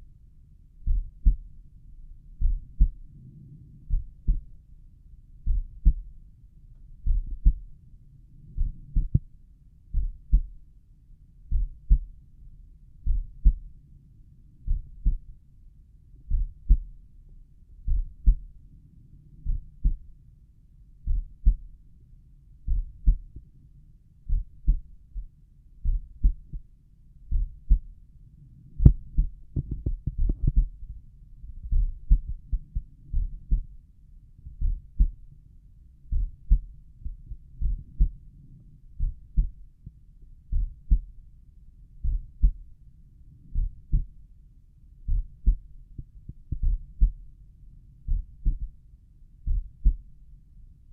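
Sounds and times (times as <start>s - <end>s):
heartbeat through stethoscope: 0.8s - 1.6s, 2.3s - 3.1s, 3.8s - 4.6s, 5.4s - 6.2s, 7.0s - 7.7s, 8.5s - 10.6s, 11.5s - 12.2s, 13.0s - 13.8s, 14.6s - 15.3s, 16.2s - 17.0s, 17.8s - 18.5s, 19.4s - 20.1s, 21.0s - 21.8s, 22.6s - 23.5s, 24.2s - 26.7s, 27.3s - 28.0s, 28.8s - 33.8s, 34.4s - 35.3s, 36.1s - 38.3s, 39.0s - 41.2s, 42.0s - 42.7s, 43.5s - 44.2s, 45.1s - 47.3s, 48.1s - 48.8s, 49.4s - 50.2s.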